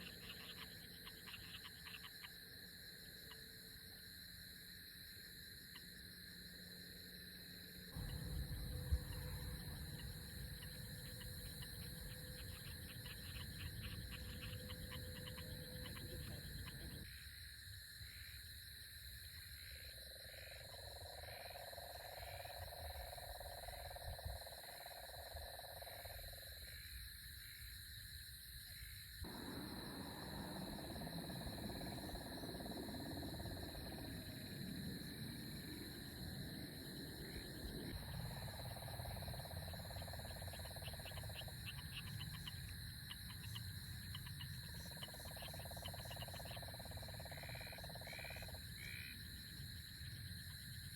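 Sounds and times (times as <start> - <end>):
frogs calling: 0.0 - 50.9
insects trilling: 0.0 - 50.9
distant thunder rumble: 8.0 - 12.6.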